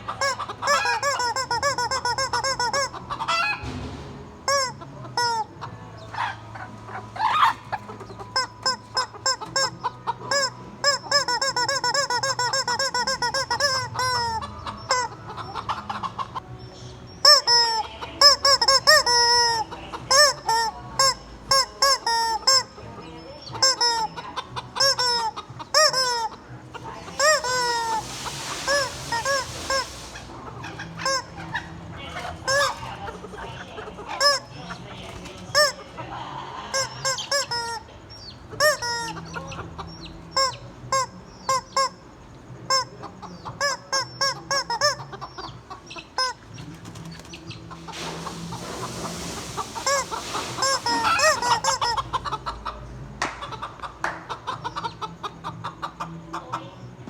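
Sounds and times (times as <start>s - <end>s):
rubber chicken toy squeaking: 0.0s - 3.8s, 4.4s - 6.4s, 7.2s - 16.4s, 17.2s - 26.5s, 27.1s - 28.0s, 28.6s - 36.0s, 36.6s - 47.2s, 49.8s - 52.5s
chickens clucking: 0.0s - 57.0s
brief hiss: 27.7s - 30.4s, 47.9s - 51.4s.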